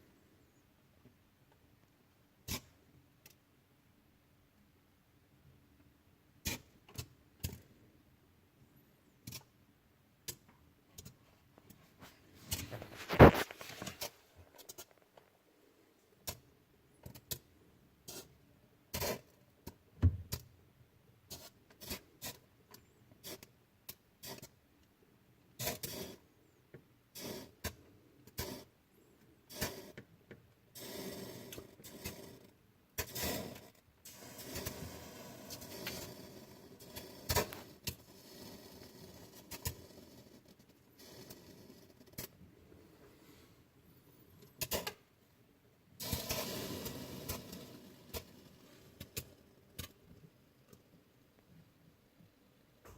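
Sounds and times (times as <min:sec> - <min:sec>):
clicks knocks and scrapes: 0:11.0 - 0:15.3
rustling: 0:11.1 - 0:15.4.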